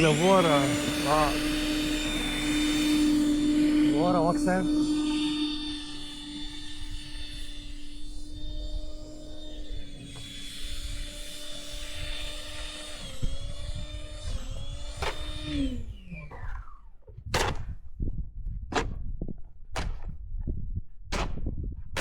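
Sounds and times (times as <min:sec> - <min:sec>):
harsh scraping strokes: 0:00.0 - 0:15.4
small motor running: 0:00.0 - 0:17.2.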